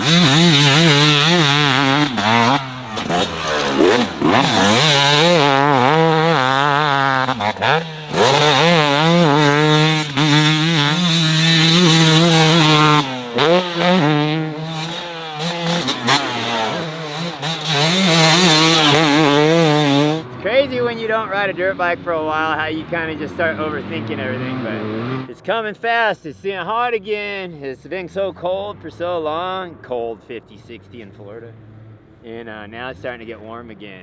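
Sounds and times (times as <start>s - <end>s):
motocross bike engine revving: 0.0s - 25.6s.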